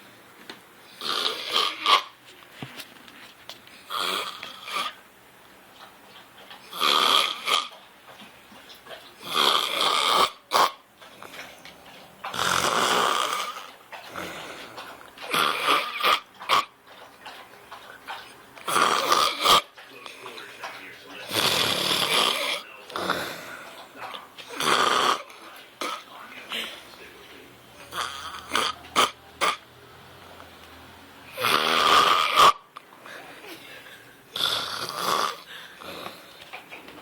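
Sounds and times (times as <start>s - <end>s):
man snoring: 6.7s - 7.6s, 9.2s - 10.3s, 12.4s - 13.6s, 18.7s - 19.6s, 21.3s - 23.7s, 24.5s - 25.3s, 27.9s - 29.1s, 31.3s - 32.6s, 34.3s - 36.2s.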